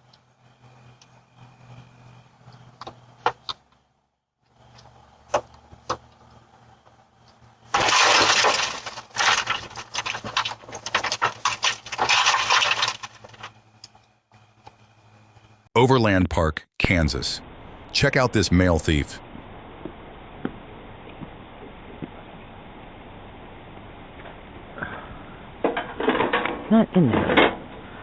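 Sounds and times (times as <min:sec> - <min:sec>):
glass breaking and crunching: 0:07.7 - 0:13.5.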